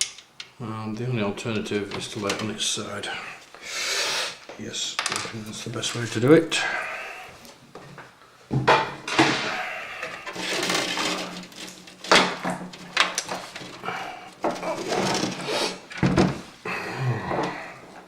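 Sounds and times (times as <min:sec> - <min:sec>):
scraping and rustling: 0:08.9 - 0:16.6.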